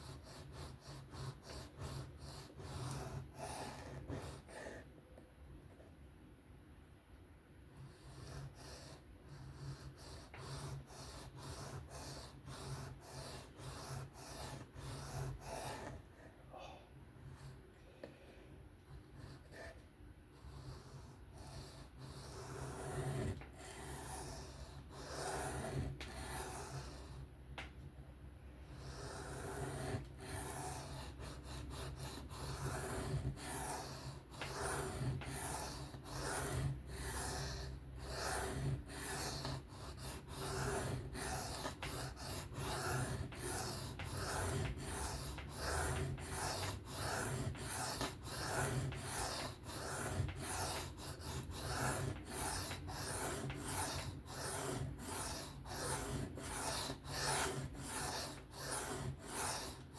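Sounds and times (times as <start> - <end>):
knife rasping on sharpening stone: 31.8 - 59.8.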